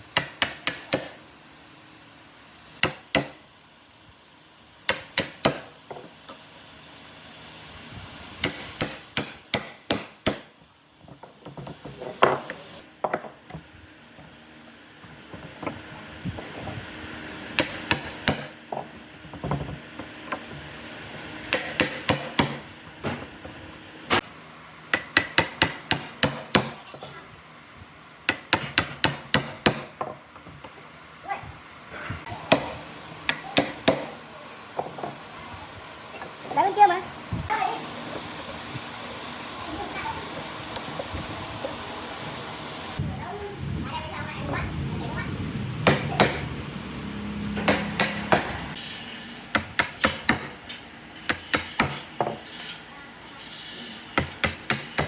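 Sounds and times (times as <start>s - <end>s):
hammer tapping on wood: 28.3s - 30.2s, 47.6s - 48.6s.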